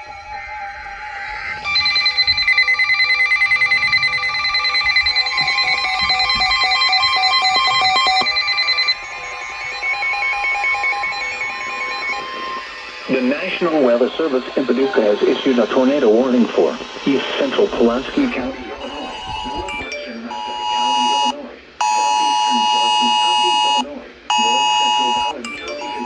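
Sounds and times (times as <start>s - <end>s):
softer tone sequence: 0.0s - 26.0s
warbling electronic alert tones: 1.0s - 26.0s.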